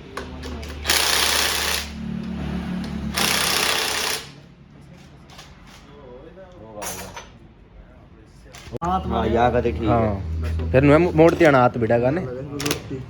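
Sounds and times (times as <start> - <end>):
power tool tightening bolts: 0.4 - 2.0, 2.8 - 4.4, 12.6 - 12.9.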